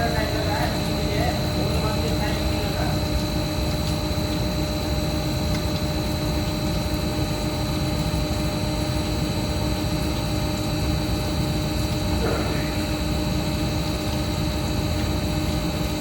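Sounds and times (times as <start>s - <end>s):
drilling machine running: 0.0s - 7.9s
high steady whine: 0.0s - 16.0s.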